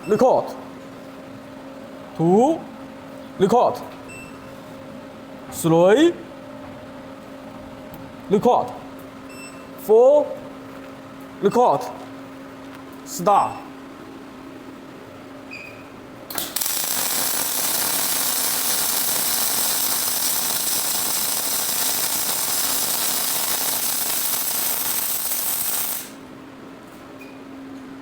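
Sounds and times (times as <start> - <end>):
welding arc crackling: 16.3 - 26.3.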